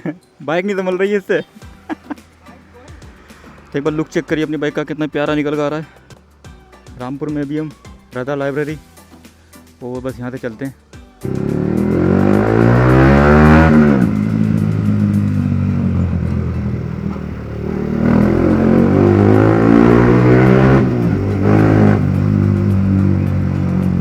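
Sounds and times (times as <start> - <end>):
motorcycle engine accelerating: 11.2 - 24.0.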